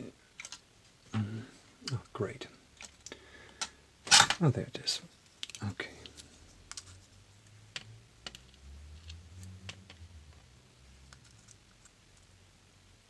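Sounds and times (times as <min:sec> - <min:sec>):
low rumble of handling: 0:06.1 - 0:12.3.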